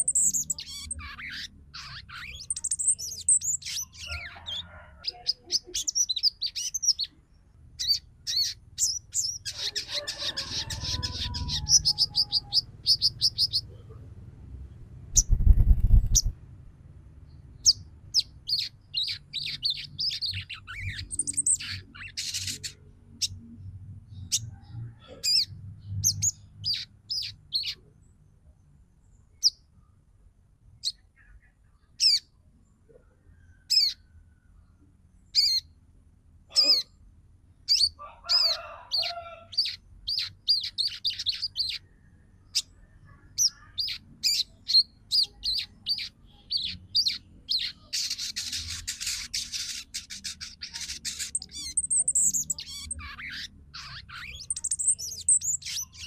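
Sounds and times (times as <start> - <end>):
bird chirping calls: 0.0 - 16.4, 17.3 - 28.2, 30.8 - 34.2, 35.3 - 35.8, 37.6 - 56.0
bird rattling chatter: 15.2 - 16.3.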